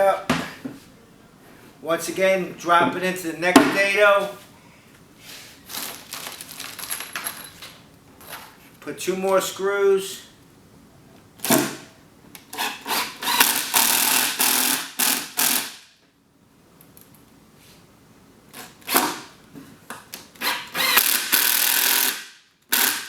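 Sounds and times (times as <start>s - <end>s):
power drill driving screws: 12.6s - 15.8s, 20.4s - 23.0s.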